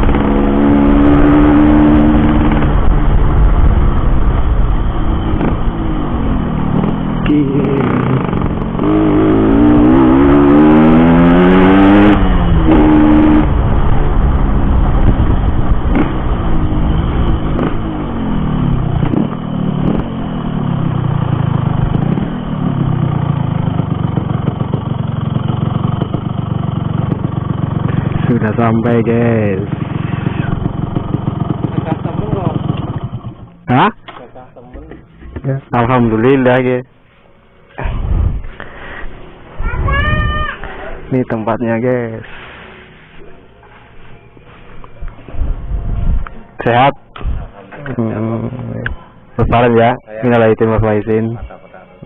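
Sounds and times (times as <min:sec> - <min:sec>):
two-stroke motorcycle engine revving: 0:00.0 - 0:34.0.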